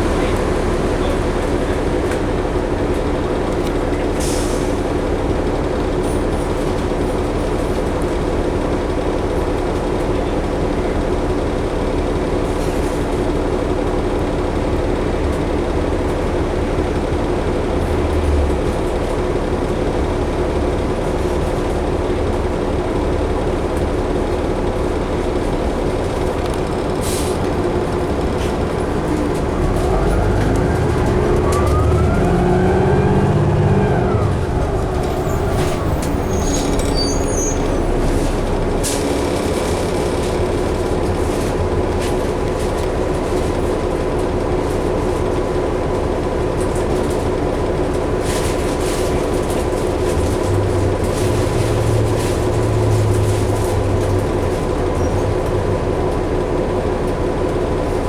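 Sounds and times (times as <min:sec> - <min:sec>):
bus engine drone: 0:00.0 - 0:58.0
road noise: 0:00.0 - 0:58.0
rising whine: 0:29.4 - 0:38.8.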